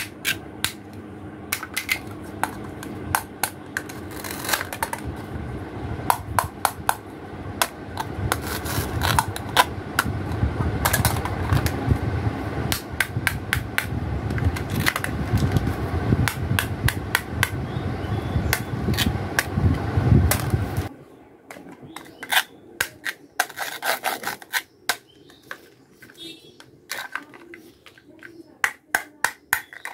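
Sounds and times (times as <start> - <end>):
low rumble: 0.0 - 21.4
toy food pieces clicking: 26.9 - 29.9.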